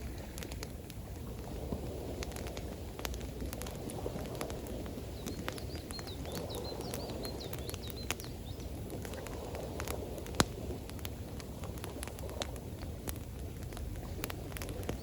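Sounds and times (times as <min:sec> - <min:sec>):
campfire crackling and popping: 0:00.0 - 0:15.0
rushing water: 0:00.0 - 0:15.0.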